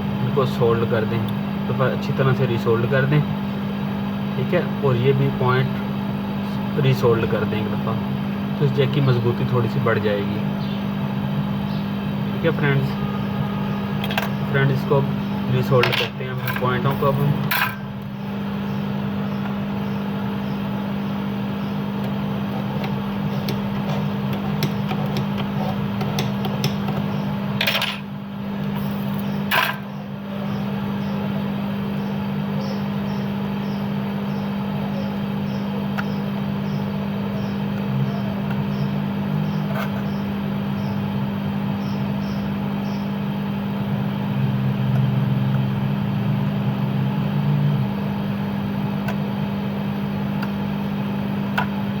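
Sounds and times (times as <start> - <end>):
electric motor humming: 16.8 - 27.7.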